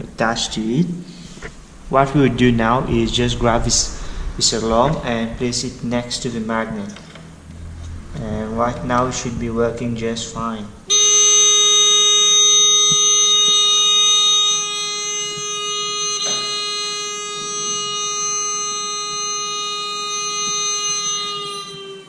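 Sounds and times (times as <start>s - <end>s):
door alarm buzzer tone: 10.9s - 22.0s.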